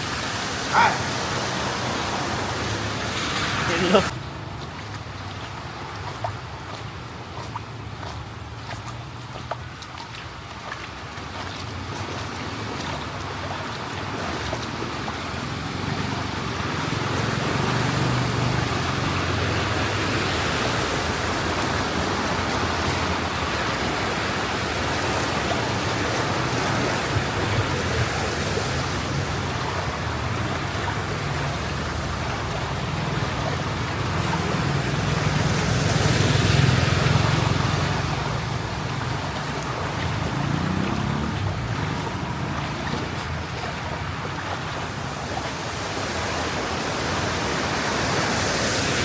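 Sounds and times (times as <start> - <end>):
churning floodwater: 0.0 - 49.0
vehicle engine hum: 11.7 - 49.0.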